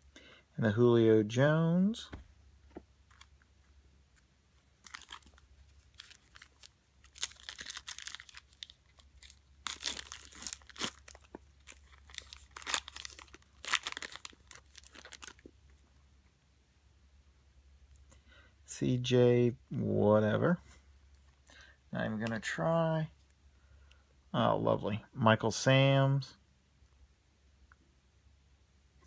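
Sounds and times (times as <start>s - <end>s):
wrapper tearing and crinkling: 4.8s - 15.5s.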